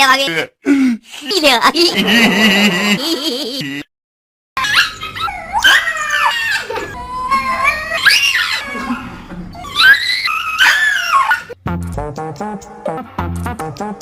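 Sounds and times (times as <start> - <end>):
dog howling and whining: 4.6 - 11.6.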